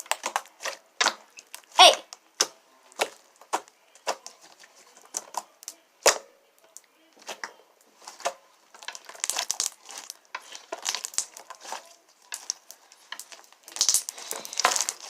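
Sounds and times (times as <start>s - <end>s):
crackling clicks of slime: 5.1s - 15.0s
slime squeezed with sticky pops: 8.0s - 15.0s.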